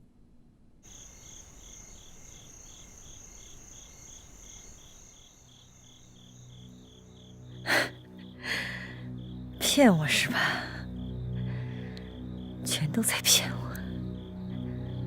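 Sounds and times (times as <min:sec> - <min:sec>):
crickets chirping: 0:00.8 - 0:15.0
low drone: 0:06.3 - 0:15.0.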